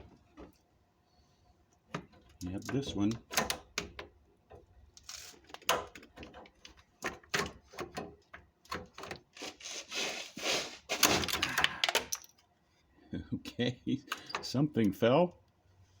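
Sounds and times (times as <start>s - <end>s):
scraping rustle: 9.3s - 11.4s.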